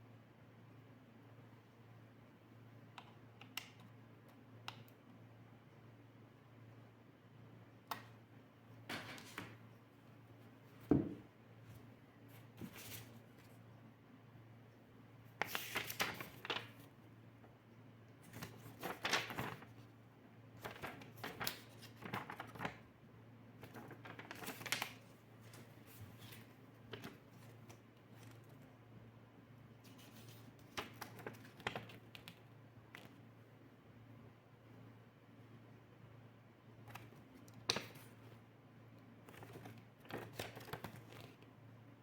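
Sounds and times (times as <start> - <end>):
knock: 10.9 - 11.3.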